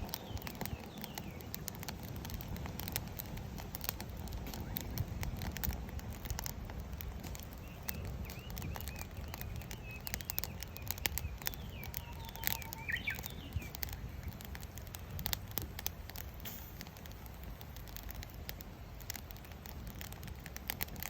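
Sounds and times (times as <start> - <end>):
wood fire crackling and popping: 0.0 - 21.0
small bird chirping: 7.3 - 15.4.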